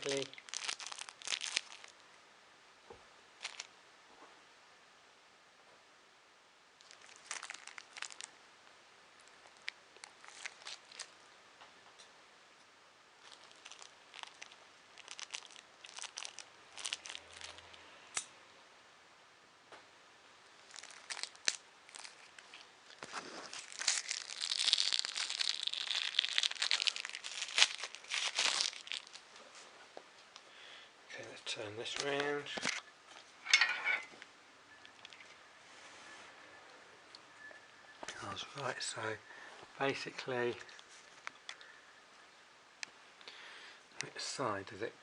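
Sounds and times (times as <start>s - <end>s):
packaging crinkling: 0.0s - 2.0s, 3.4s - 3.7s, 6.8s - 8.3s, 9.2s - 11.2s, 13.2s - 17.8s, 20.6s - 29.4s, 31.8s - 32.9s.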